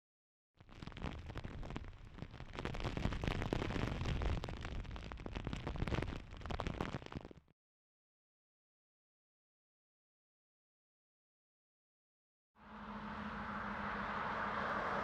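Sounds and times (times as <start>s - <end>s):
rain crackling and spattering: 0.6s - 7.5s.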